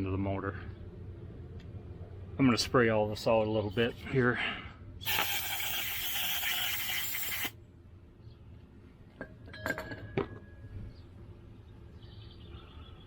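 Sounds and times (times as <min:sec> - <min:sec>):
aerosol can spraying: 0:05.0 - 0:07.5.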